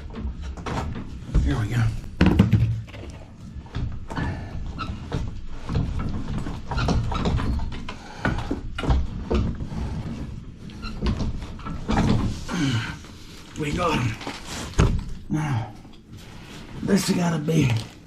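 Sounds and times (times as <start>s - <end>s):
cast iron knocking and scraping: 1.4s - 3.1s
man straining and grunting: 12.4s - 14.4s, 15.2s - 15.9s.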